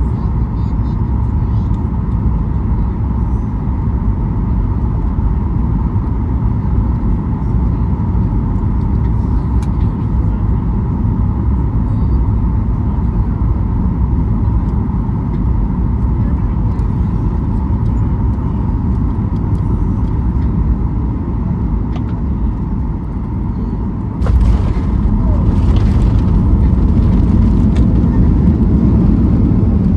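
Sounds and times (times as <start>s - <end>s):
airflow rush in plane cabin: 0.0s - 29.9s
steady engine whine: 0.0s - 29.9s
jet engines: 24.0s - 29.9s.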